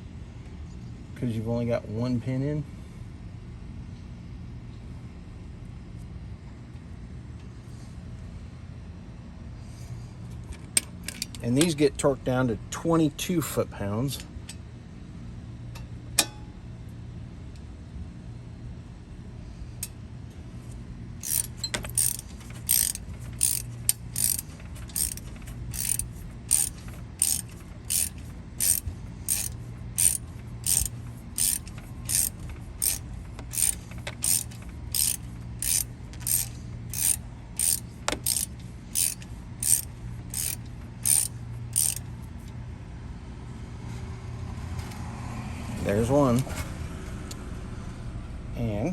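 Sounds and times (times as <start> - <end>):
socket ratchet clicking: 21.2 - 42.1.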